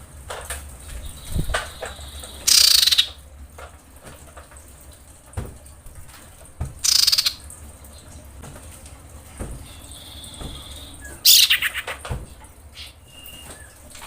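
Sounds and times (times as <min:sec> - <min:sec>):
bird harsh buzzy rattling calls: 0:00.8 - 0:03.3, 0:06.8 - 0:07.5, 0:09.6 - 0:13.9.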